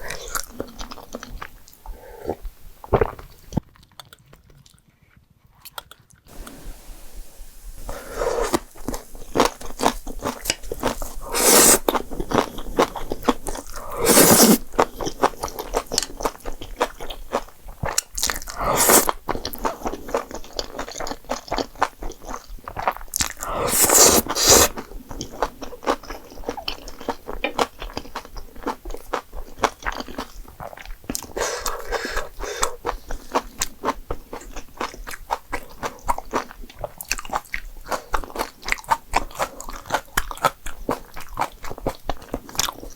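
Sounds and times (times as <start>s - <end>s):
wet chewing and crunching: 0.0s - 6.4s, 7.7s - 42.9s
loud mouthful sound: 6.3s - 14.9s, 18.3s - 19.2s, 23.3s - 24.8s.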